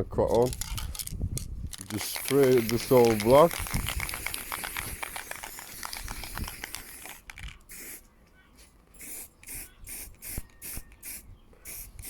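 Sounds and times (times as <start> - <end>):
spray paint can hissing: 1.7 - 8.0, 9.0 - 12.0.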